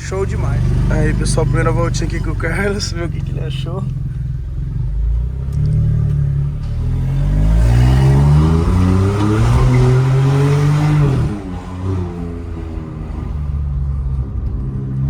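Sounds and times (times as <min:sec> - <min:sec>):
car engine accelerating hard: 0:00.0 - 0:15.0.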